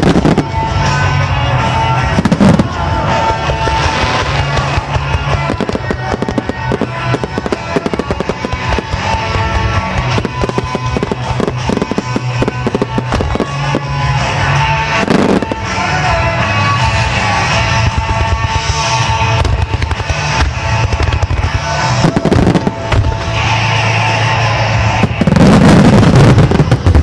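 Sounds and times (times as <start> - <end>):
pop song playing: 0.0 - 26.4
fireworks bursting and crackling: 0.0 - 27.0
firework low boom: 2.0 - 15.8.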